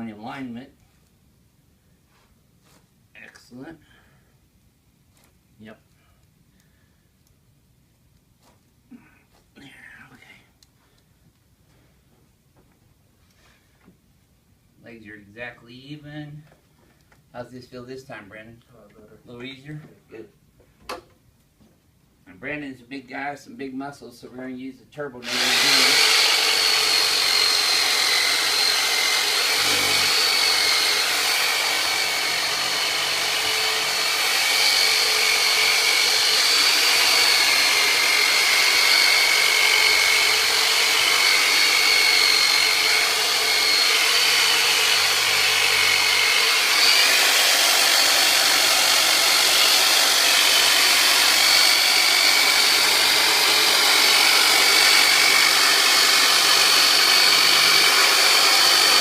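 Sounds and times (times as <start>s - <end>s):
massage instrument motor whine: 25.2s - 59.0s.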